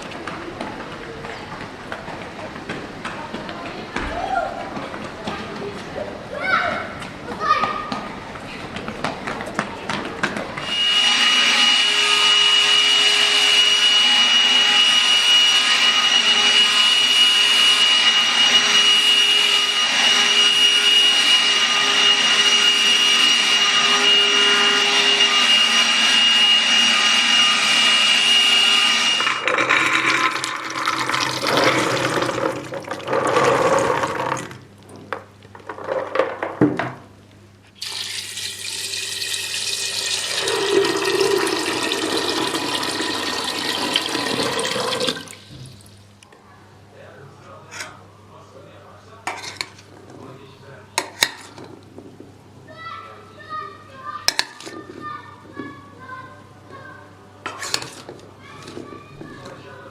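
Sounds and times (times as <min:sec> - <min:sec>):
appliance motor whining: 0:10.6 - 0:34.5.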